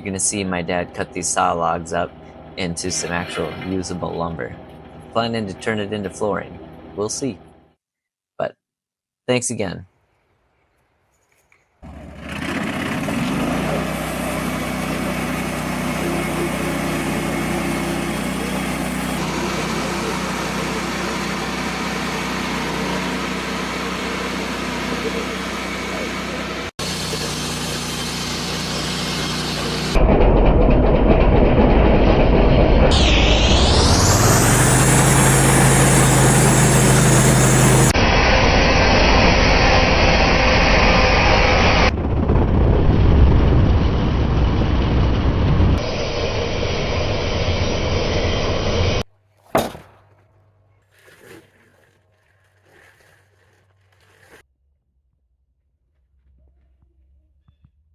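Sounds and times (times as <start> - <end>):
power saw cutting wood: 2.2 - 6.0, 11.8 - 30.0, 32.9 - 41.9, 51.0 - 54.4
machinery humming: 12.8 - 41.9
sharp knock: 49.5 - 50.2
faint scrapes: 50.8 - 54.4.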